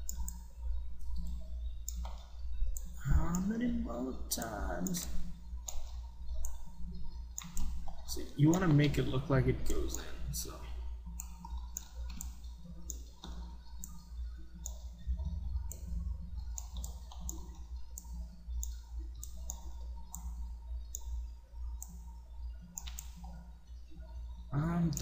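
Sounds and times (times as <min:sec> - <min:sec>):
computer mouse clicking: 0:00.0 - 0:03.5, 0:04.3 - 0:09.1, 0:11.1 - 0:21.1, 0:21.7 - 0:22.0, 0:22.6 - 0:24.2
low steady hum: 0:00.0 - 0:25.0.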